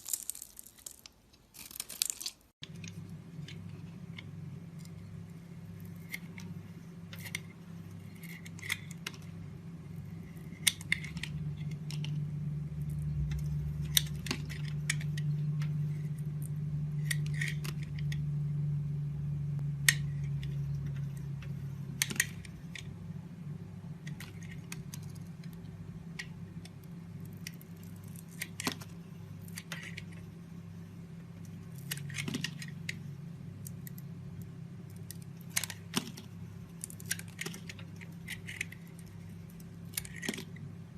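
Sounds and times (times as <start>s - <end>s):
knife carving soap: 0.0s - 12.2s, 12.8s - 18.3s, 24.0s - 30.6s, 34.9s - 40.6s
low hum: 2.6s - 40.9s.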